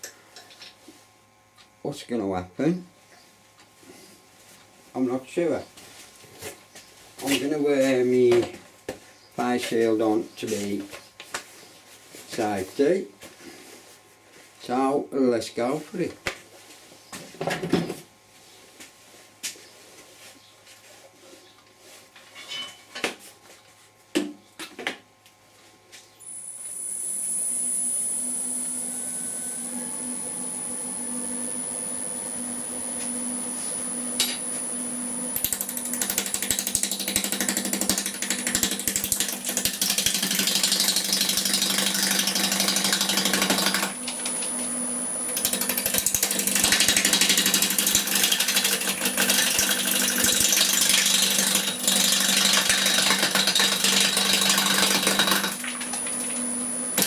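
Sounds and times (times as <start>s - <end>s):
wood lathe humming and whining: 26.3s - 57.0s.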